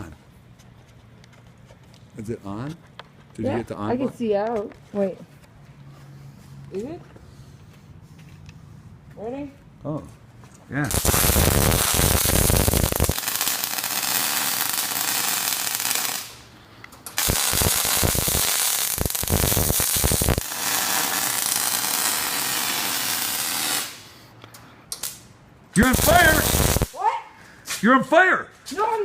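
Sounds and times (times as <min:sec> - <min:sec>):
welding arc crackling: 0:10.9 - 0:16.5, 0:17.1 - 0:24.1, 0:25.8 - 0:27.0.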